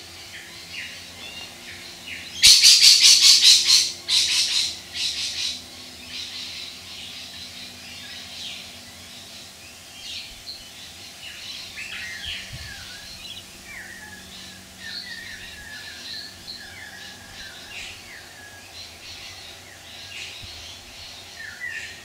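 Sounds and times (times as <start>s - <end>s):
bird chirps: 0.4s - 22.0s
bird harsh chattering call: 2.3s - 5.6s.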